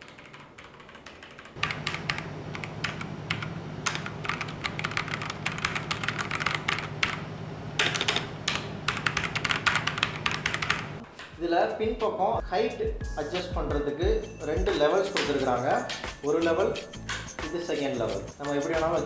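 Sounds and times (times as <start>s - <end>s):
mechanical keyboard typing: 0.0s - 11.0s.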